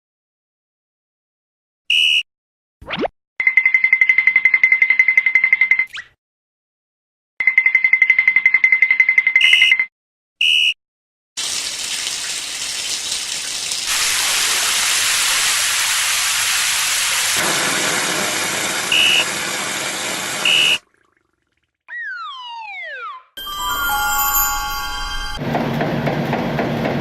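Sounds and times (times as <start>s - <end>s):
long rushing hiss: 13.9s - 20.2s.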